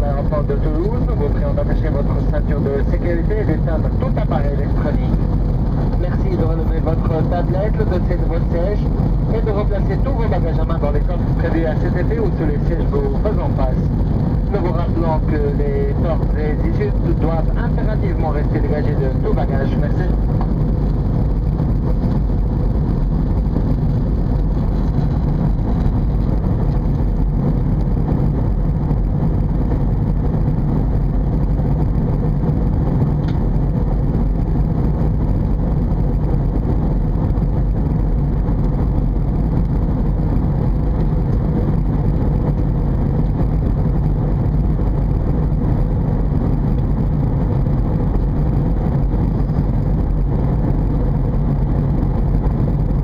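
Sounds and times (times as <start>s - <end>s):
airplane cabin engine rumble: 0.0s - 53.0s.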